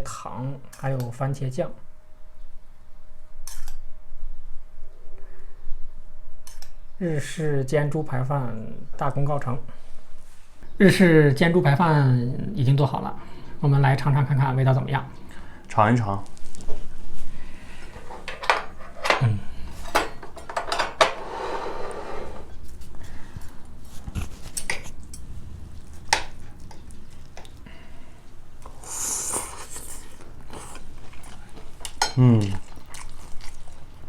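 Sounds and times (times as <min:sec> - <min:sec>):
cutlery clinking on dishes: 0:18.1 - 0:21.2, 0:31.8 - 0:32.7.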